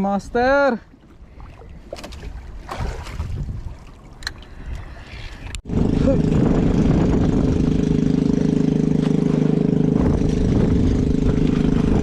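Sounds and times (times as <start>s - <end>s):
small boat engine puttering: 4.1s - 12.0s.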